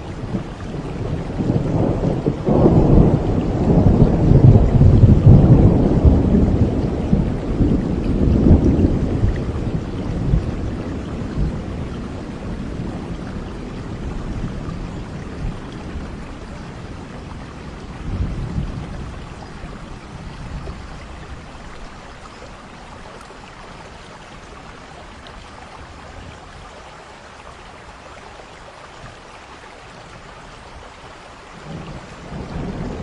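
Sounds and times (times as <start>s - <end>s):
steady rain: 0.0s - 33.0s
thunder rolling: 1.0s - 21.6s, 31.6s - 33.0s.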